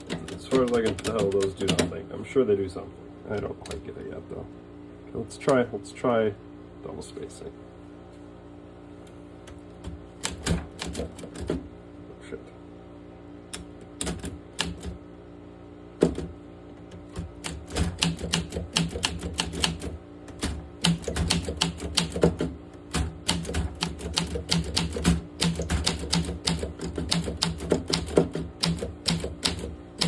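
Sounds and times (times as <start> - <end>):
manual typewriter keystrokes: 0.0 - 2.0, 9.4 - 11.6, 13.5 - 15.0, 16.0 - 30.0.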